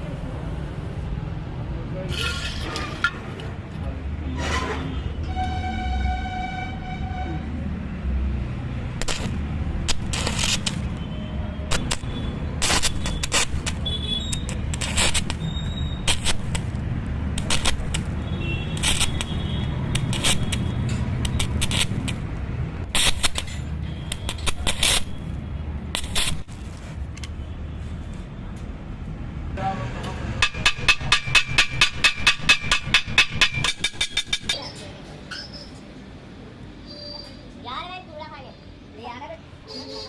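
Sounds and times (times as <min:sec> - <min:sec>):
metal cracks and snaps: 0:17.4 - 0:18.1.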